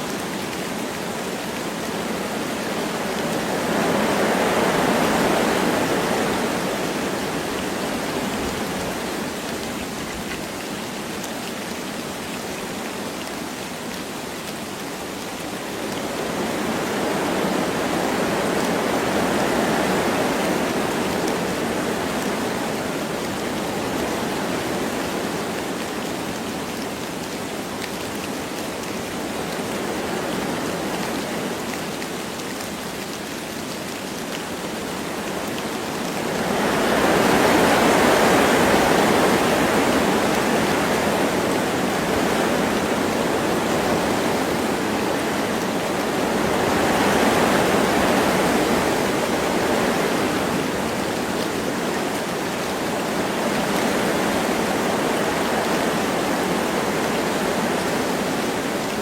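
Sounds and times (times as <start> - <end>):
light rain: 0.0 - 59.0
wind through trees: 0.0 - 59.0.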